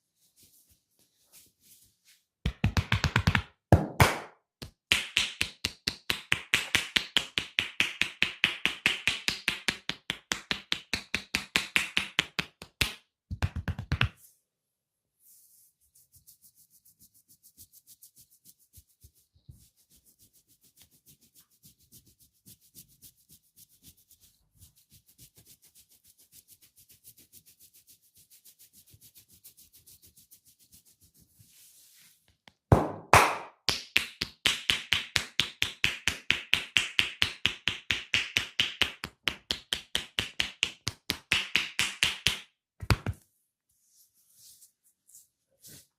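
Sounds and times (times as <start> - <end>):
soft rubbing on skin: 0.0 - 2.4, 15.2 - 32.3, 43.7 - 45.9
rapid hand slaps: 2.4 - 14.2, 32.7 - 43.2.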